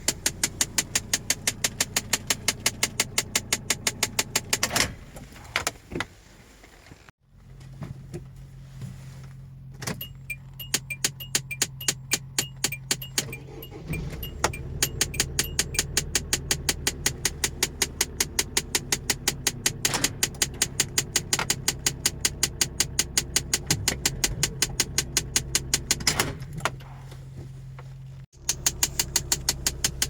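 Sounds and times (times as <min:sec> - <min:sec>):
rapid clicking in dashboard: 0:00.0 - 0:04.8, 0:10.0 - 0:26.1, 0:28.4 - 0:30.0.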